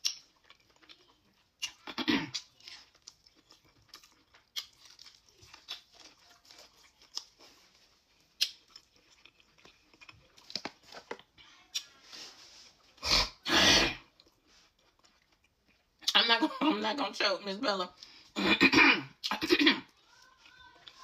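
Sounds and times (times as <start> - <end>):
chewing and lip smacking: 0.0 - 12.0, 14.1 - 16.2
crab shells cracking: 8.4 - 11.2.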